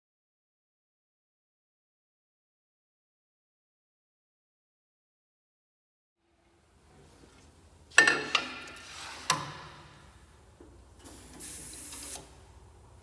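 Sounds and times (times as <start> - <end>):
metal clanks and knocks: 7.9 - 10.1
machine hiss: 11.0 - 12.4.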